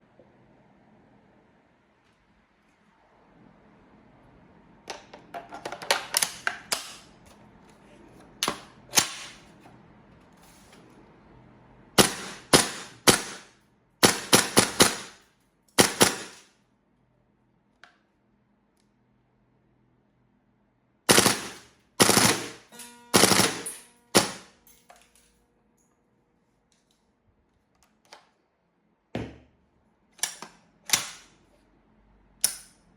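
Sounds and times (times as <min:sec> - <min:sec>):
airsoft rifle full-auto bursts: 0:12.0 - 0:15.2, 0:15.8 - 0:16.4, 0:21.1 - 0:22.6, 0:23.2 - 0:24.5
sharp single shots: 0:12.0 - 0:15.2, 0:15.8 - 0:16.4.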